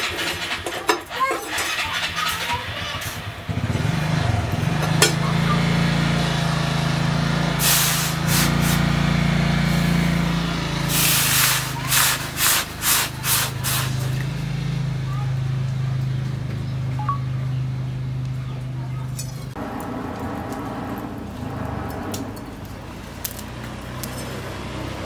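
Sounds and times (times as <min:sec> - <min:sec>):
hissy grinding noise: 0:07.2 - 0:14.6, 0:19.5 - 0:25.0.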